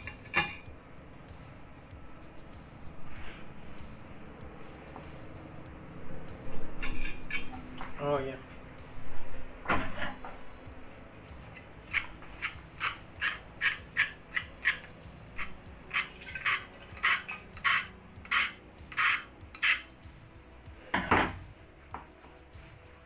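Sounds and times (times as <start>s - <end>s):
metal scraping on steel plate: 0.0s - 0.7s, 6.4s - 8.0s, 9.2s - 10.6s, 11.4s - 20.0s.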